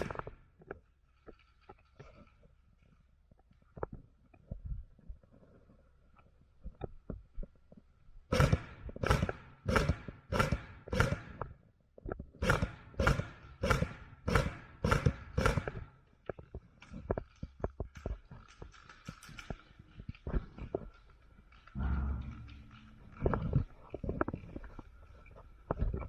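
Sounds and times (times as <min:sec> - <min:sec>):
heavy footsteps walking: 0:21.8 - 0:23.6.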